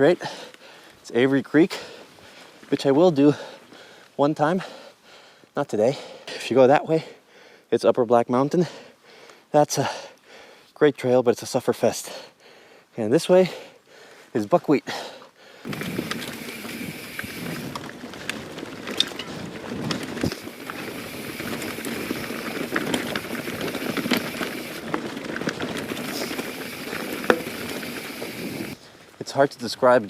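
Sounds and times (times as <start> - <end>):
bike clicks and rattles: 15.6 - 28.8
bike tyres crackling on dirt: 15.6 - 30.0.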